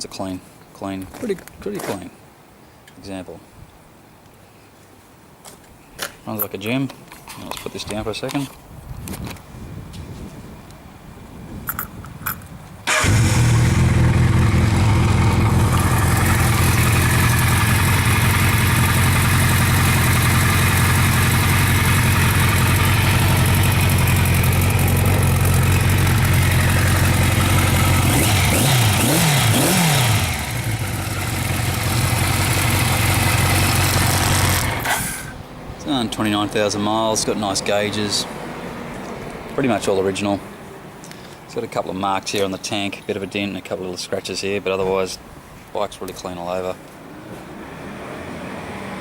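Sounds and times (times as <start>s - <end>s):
motorcycle engine idling: 12.9s - 34.8s
motorcycle engine revving: 12.9s - 35.0s.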